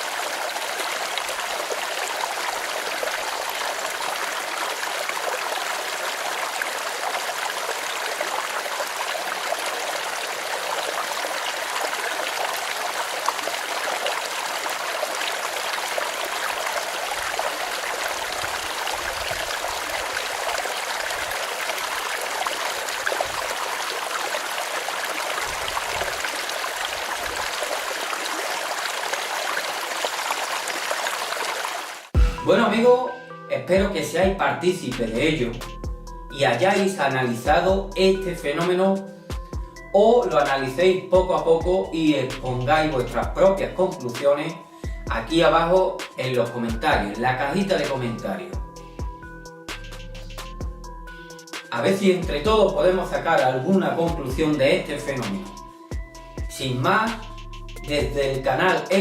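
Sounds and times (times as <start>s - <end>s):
stream babbling: 0.0s - 32.4s, 58.5s - 59.0s.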